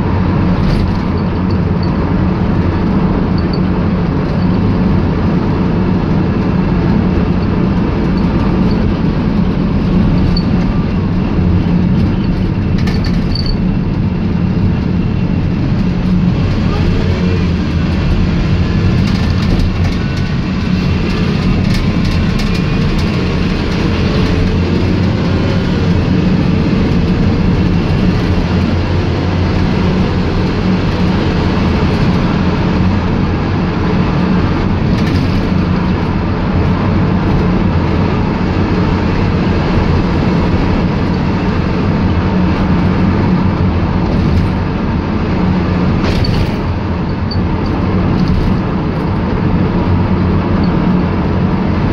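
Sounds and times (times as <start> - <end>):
minibus engine and road rumble: 0.0 - 51.9
body rattles and clicks: 0.1 - 17.0, 17.7 - 51.9.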